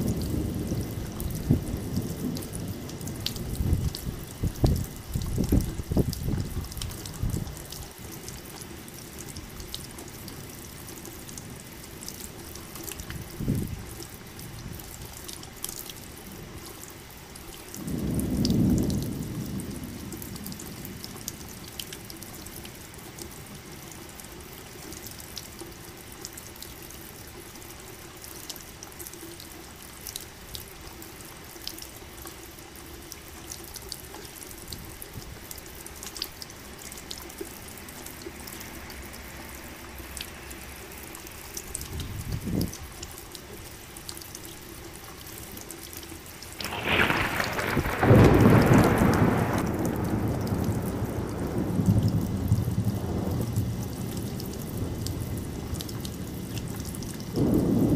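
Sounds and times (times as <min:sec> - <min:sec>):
thunder rumbling: 0:00.0 - 0:07.5, 0:17.8 - 0:21.2, 0:46.6 - 0:57.9
sharp drips: 0:00.0 - 0:52.6
steady rain: 0:00.0 - 0:57.9
loud thunderclap: 0:46.6 - 0:53.9, 0:57.3 - 0:57.9.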